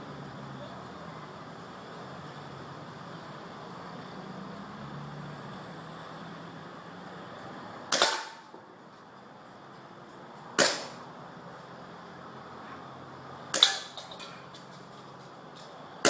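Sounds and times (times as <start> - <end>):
airsoft pistol shots: 7.9 - 8.5, 10.6 - 11.0.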